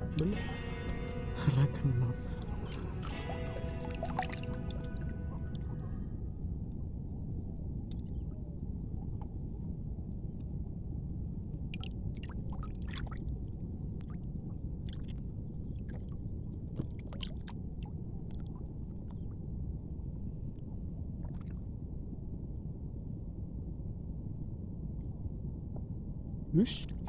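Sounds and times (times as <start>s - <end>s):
shallow water splashing: 0.0s - 6.2s, 11.6s - 19.4s
low water rush: 0.0s - 6.8s, 26.5s - 27.0s.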